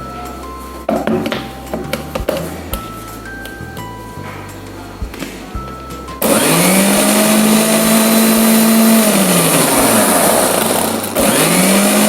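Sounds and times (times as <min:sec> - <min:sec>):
mixer grinder motor whirring: 0:06.2 - 0:12.0.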